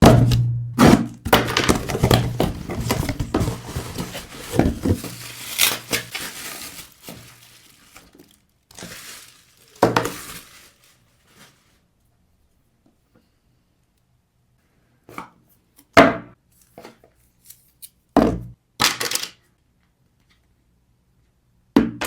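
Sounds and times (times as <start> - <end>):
box packaging clicks and crinkling: 0.8 - 11.6.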